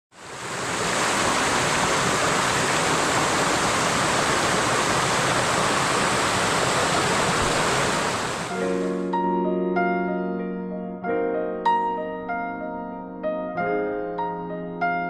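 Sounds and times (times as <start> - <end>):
flowing water rushing: 0.1 - 8.8.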